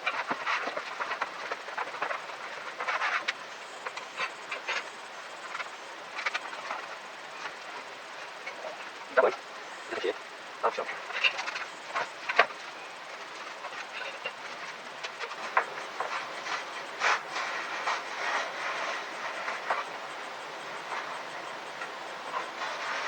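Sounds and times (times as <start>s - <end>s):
steady hiss: 0.0s - 23.0s.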